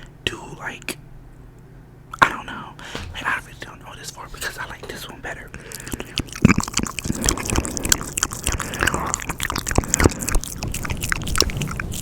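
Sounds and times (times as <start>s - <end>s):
wet lip smacks: 5.6s - 12.0s.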